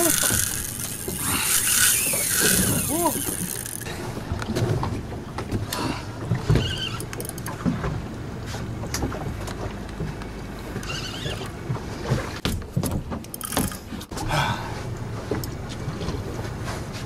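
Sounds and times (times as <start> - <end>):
boat motor humming: 0.0 - 12.4
water noise: 0.0 - 12.4
wind: 0.0 - 17.0.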